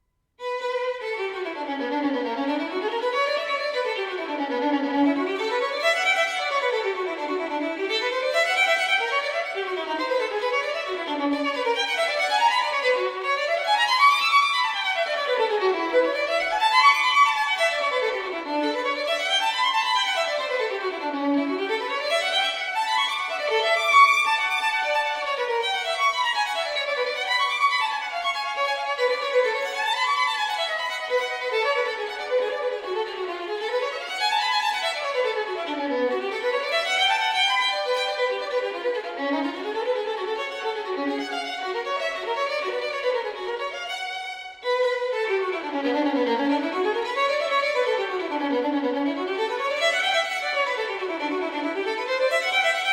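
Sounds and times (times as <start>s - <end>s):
violin playing fast runs: 0.4s - 52.9s.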